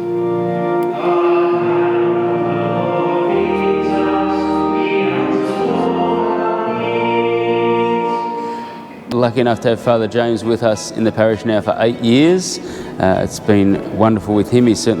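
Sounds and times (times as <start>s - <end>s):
instrumental accompaniment: 0.0s - 9.1s
sacred choral singing: 0.0s - 9.1s.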